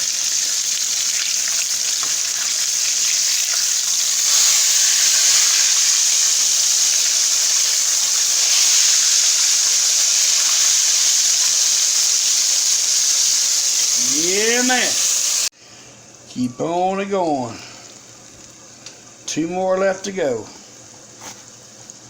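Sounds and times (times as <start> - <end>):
steaks sizzling in hot oil: 0.0 - 15.5.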